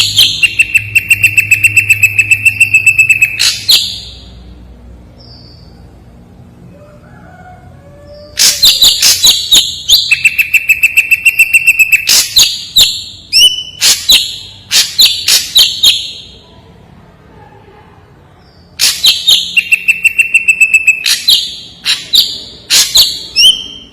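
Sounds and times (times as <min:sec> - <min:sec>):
long held bird whistle: 0:08.4 - 0:16.2, 0:18.9 - 0:23.9.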